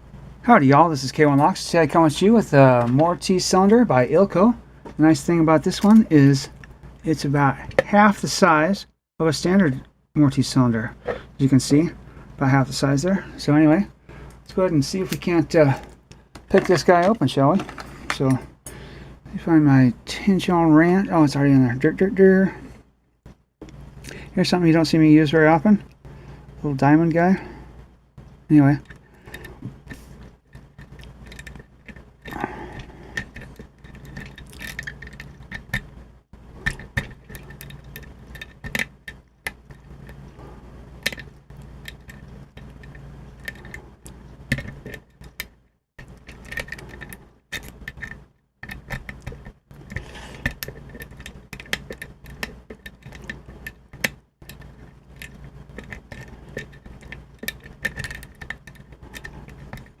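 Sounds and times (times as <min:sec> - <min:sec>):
steady low hum: 0:00.0 - 1:00.0
lock pick clicking and scraping: 0:28.8 - 0:35.9, 0:36.6 - 0:40.2, 0:41.0 - 1:00.0.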